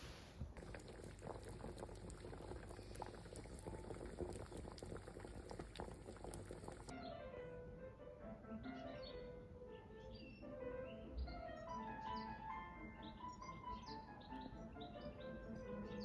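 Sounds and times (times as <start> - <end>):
water boiling: 0.0 - 6.9
music: 6.9 - 16.0.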